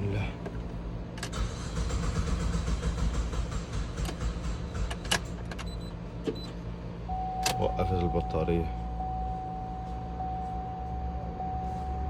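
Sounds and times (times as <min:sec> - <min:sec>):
engine cranking by starter: 0:01.2 - 0:06.4.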